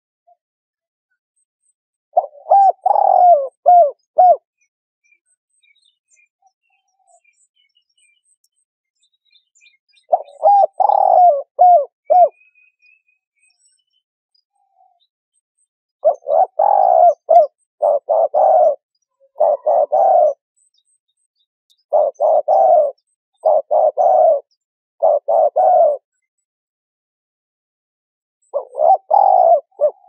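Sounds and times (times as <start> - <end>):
faint small bird chirps: 0.3 - 26.7
dove cooing: 2.1 - 4.5, 10.0 - 12.4, 16.0 - 20.4, 21.9 - 26.2, 28.4 - 30.0.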